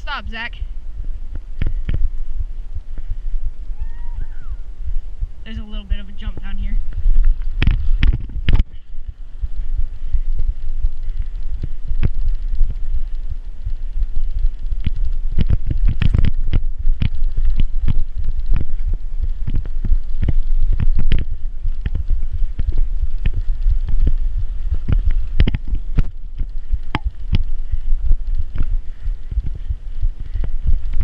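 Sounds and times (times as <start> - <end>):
bicycle rumbling over rough ground: 0.0 - 31.0
bicycle knocks and rattles: 6.9 - 10.2, 10.8 - 31.0.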